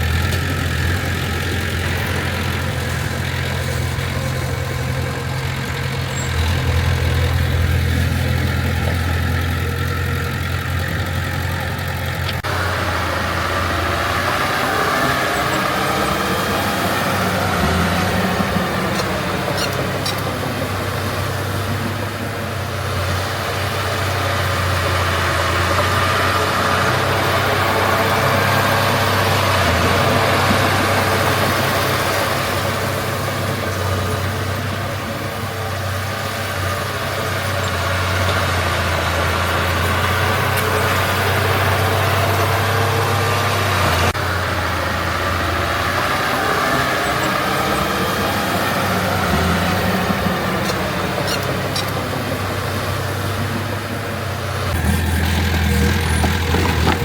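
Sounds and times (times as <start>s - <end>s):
heavy diesel engine running: 0.0s - 57.0s.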